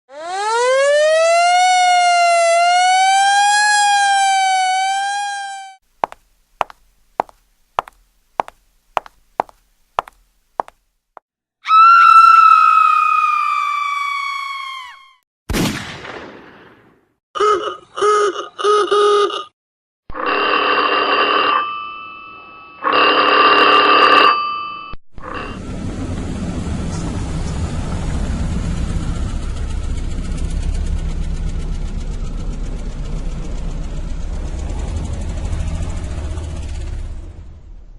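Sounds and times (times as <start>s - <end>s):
falling electronic tone: 2.9s - 5.8s
engine running with low rumble: 25.2s - 37.9s.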